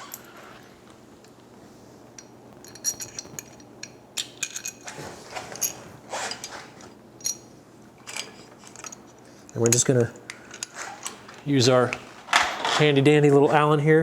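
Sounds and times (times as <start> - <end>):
metal bolts clinking: 2.2 - 6.6, 7.2 - 13.1.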